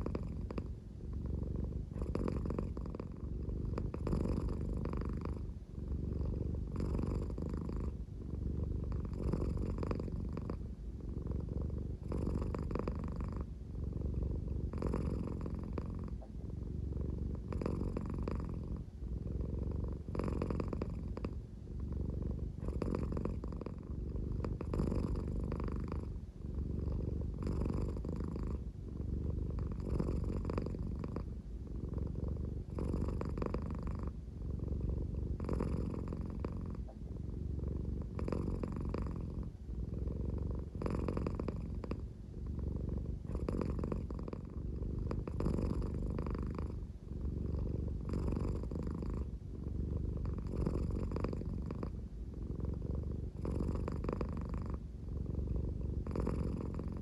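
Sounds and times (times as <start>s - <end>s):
cat purring: 0.0s - 57.0s.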